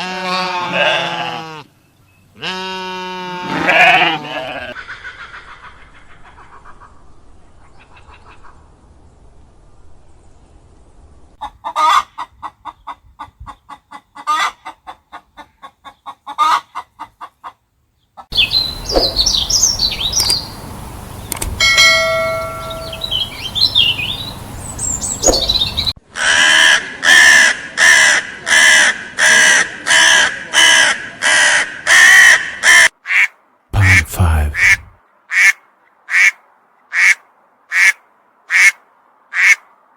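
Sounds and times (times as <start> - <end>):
loud evenly spaced calls: 18.3 - 25.9
bird chirping: 18.3 - 26.0.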